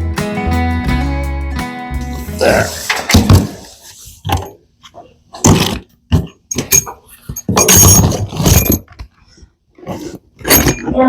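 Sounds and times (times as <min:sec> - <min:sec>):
tools rattling and scraping: 0:02.8 - 0:09.2, 0:09.8 - 0:11.0
tools knocking in metal box: 0:05.4 - 0:09.0.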